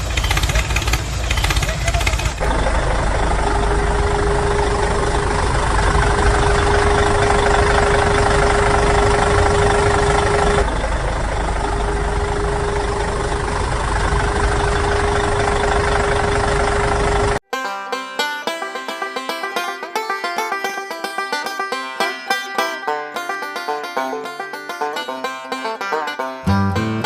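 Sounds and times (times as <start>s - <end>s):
constant whine: 0.0s - 17.4s
engine idling: 0.0s - 17.4s.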